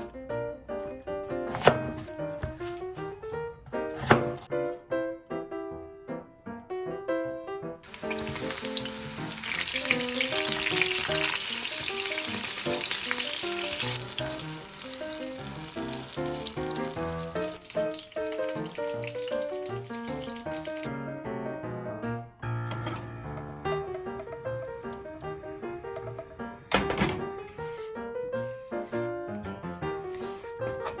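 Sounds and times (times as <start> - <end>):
food frying in hot oil: 7.8 - 20.9.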